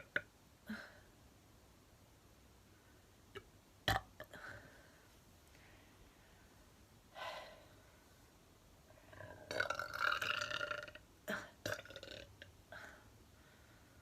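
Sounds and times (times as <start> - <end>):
woman burping: 0.0 - 1.0, 3.4 - 4.4, 9.5 - 12.4.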